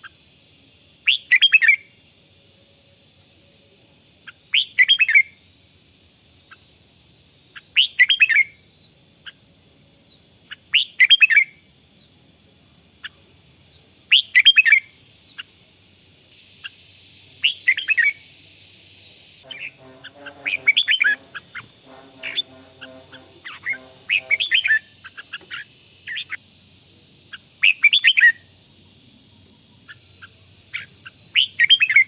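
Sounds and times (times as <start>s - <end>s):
bulbul singing: 6.5s - 12.1s, 13.0s - 15.7s, 16.3s - 26.5s, 27.2s - 32.0s
faint high-pitched tone: 17.9s - 25.0s.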